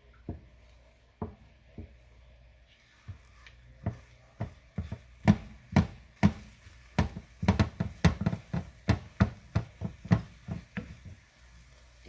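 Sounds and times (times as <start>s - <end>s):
spatula tapping frying pan: 1.2s - 2.0s, 3.1s - 11.6s.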